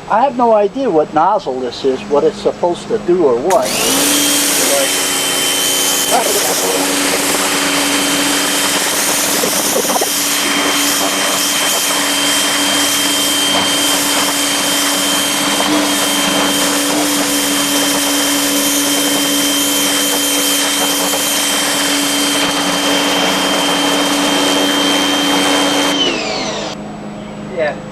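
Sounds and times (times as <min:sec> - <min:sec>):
pressure washer motor hum and whine: 0:01.5 - 0:27.2
water jetting from spray nozzle: 0:03.5 - 0:26.8.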